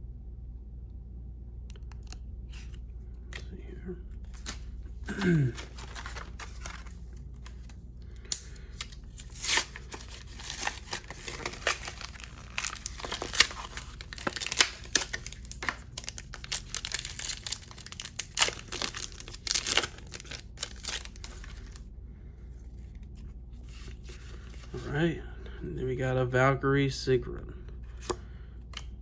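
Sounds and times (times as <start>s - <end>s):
packaging crinkling and tearing: 4.3s - 21.9s.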